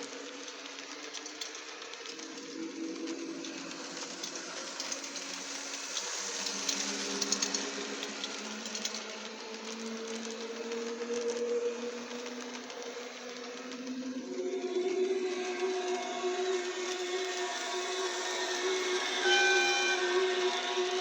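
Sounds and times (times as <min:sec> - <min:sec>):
faint clicks: 0:00.0 - 0:17.4
electric locomotive motor whine: 0:00.0 - 0:21.0.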